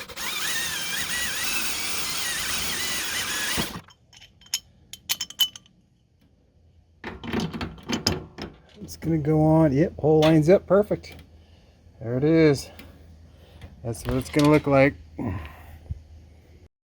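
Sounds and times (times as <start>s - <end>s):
electric drill whine: 0.0s - 3.8s.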